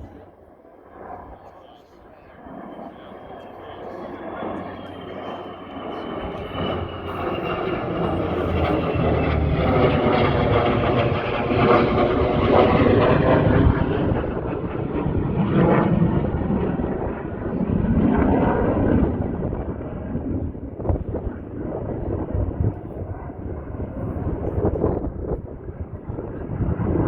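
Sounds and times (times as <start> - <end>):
jet engine roaring: 0.0 - 27.0.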